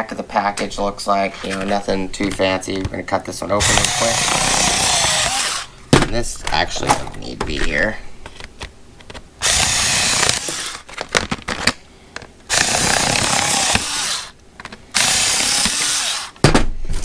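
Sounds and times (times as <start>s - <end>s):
power tool whirring: 3.6s - 5.8s, 9.4s - 10.9s, 12.5s - 16.4s.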